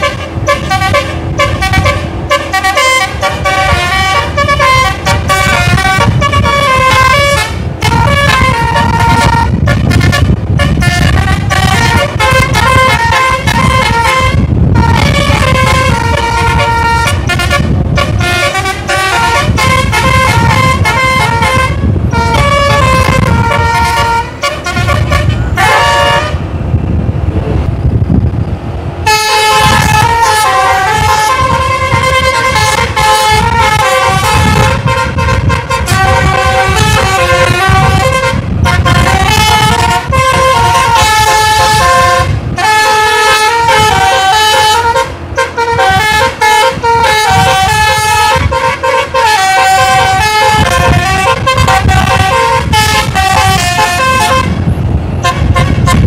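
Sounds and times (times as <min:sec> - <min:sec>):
multi-tone bus horn melodies: 0:00.0 - 0:26.6, 0:29.0 - 0:56.0
low rumble: 0:00.0 - 0:42.6.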